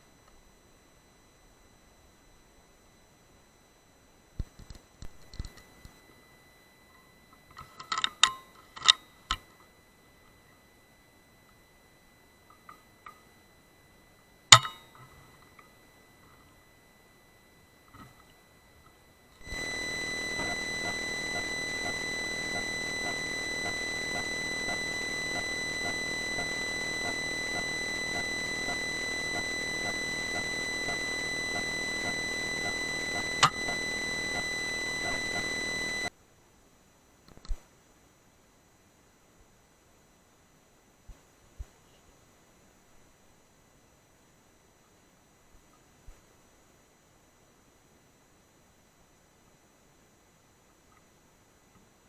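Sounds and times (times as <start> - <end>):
high-pitched whine: 0.0 - 36.1.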